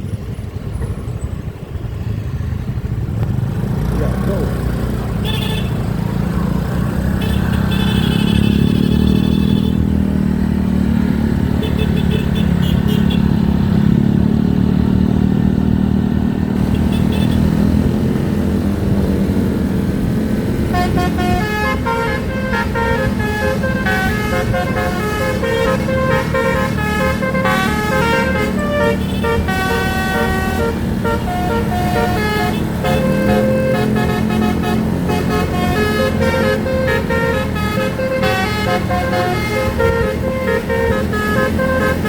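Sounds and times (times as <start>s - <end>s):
bus engine droning: 0.0s - 42.0s
multi-tone horn melody: 7.0s - 10.0s, 11.0s - 13.8s, 16.6s - 18.4s, 20.5s - 42.0s
short high horn toots: 20.7s - 42.0s.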